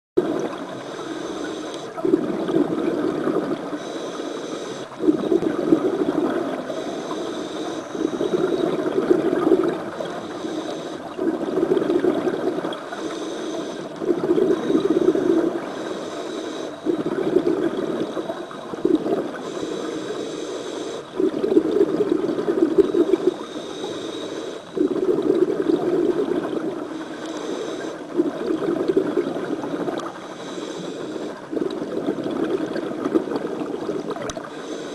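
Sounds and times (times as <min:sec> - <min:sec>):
regulator inhale hiss: 0:00.7 - 0:02.0, 0:03.3 - 0:05.5, 0:06.3 - 0:11.8, 0:12.4 - 0:21.3, 0:22.7 - 0:25.1, 0:26.8 - 0:29.0, 0:29.9 - 0:31.7, 0:34.4 - 0:34.9
exhaled bubbles rushing: 0:02.0 - 0:03.8, 0:04.9 - 0:06.8, 0:07.9 - 0:10.3, 0:11.0 - 0:12.9, 0:13.8 - 0:15.8, 0:16.8 - 0:19.5, 0:21.1 - 0:23.4, 0:24.7 - 0:27.0, 0:28.0 - 0:30.2, 0:31.4 - 0:34.5.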